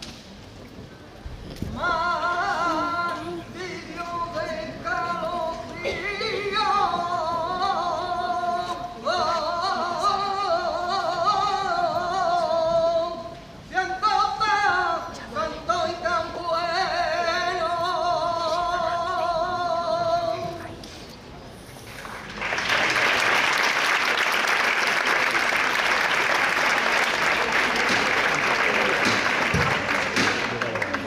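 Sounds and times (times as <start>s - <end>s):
person singing unaccompanied: 1.7s - 20.6s.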